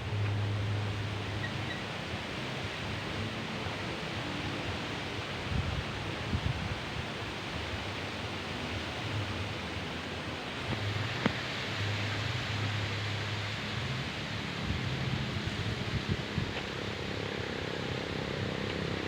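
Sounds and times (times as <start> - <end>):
leaves rustling in wind: 0.0 - 19.0
wind buffeting microphone: 5.4 - 7.7, 10.7 - 19.0.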